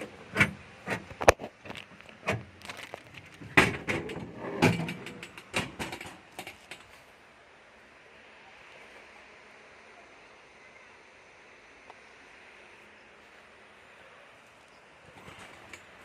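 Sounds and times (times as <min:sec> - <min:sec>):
low steady hiss: 0:00.0 - 0:16.0
knocks and clacks of hard object: 0:00.4 - 0:06.9.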